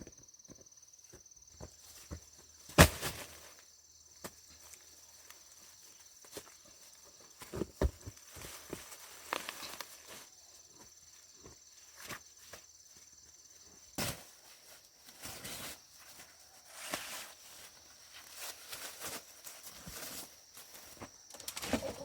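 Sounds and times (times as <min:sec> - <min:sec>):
dry corn plants snapping and rustling: 0:02.0 - 0:10.5, 0:13.9 - 0:22.0.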